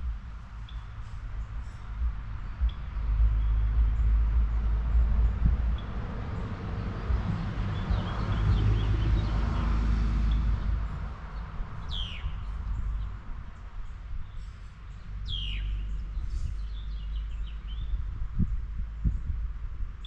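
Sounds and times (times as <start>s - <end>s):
low rumble: 0.0s - 20.0s
faint bird twittering: 11.8s - 13.1s, 14.2s - 19.2s.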